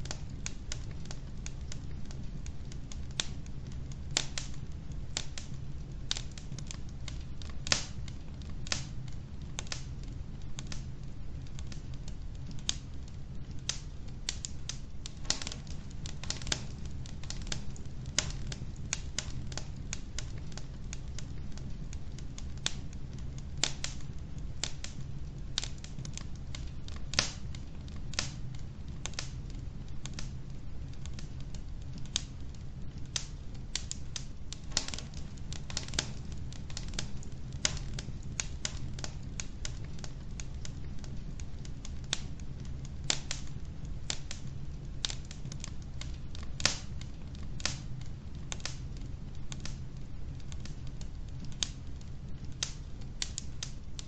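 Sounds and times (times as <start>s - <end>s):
fire crackling and popping: 0.0s - 54.0s
low background rumble: 0.0s - 54.0s.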